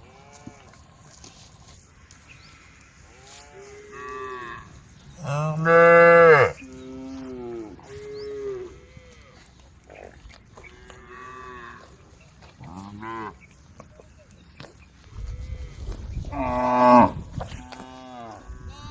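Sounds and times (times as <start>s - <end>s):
cows mooing: 3.3s - 8.8s, 16.3s - 18.9s.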